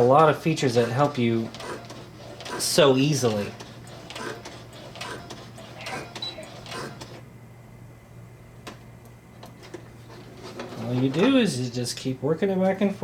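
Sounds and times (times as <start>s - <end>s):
sewing machine clacks: 0.0s - 7.2s.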